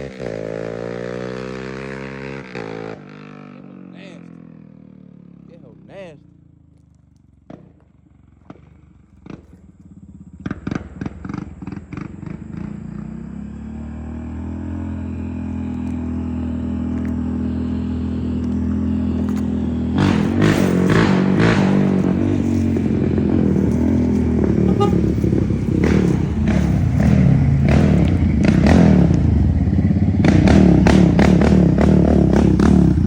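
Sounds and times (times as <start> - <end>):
engine idling: 5.5 - 13.2, 14.8 - 33.0
engine throttle blips: 6.4 - 33.0.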